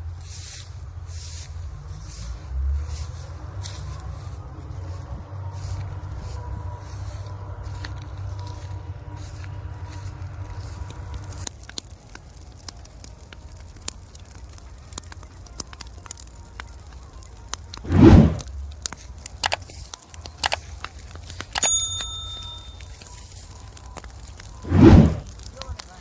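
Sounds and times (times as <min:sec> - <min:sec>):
low engine hum: 0:00.0 - 0:11.5, 0:17.7 - 0:19.4, 0:23.5 - 0:25.4
sharp crackles and clicks: 0:05.6 - 0:26.0.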